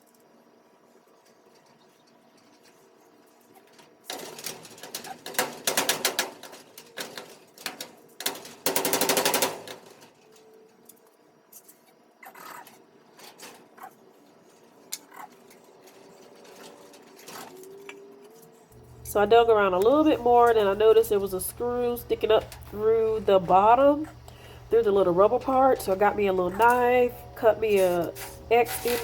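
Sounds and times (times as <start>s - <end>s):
cordless drill rattling: 18.8s - 29.0s.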